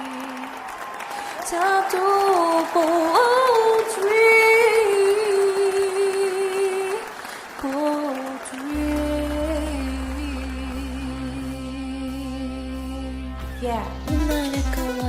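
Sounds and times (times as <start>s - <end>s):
person singing long held notes: 0.0s - 0.6s, 1.3s - 15.0s
backing track: 8.7s - 15.0s
low bass note: 8.8s - 15.0s.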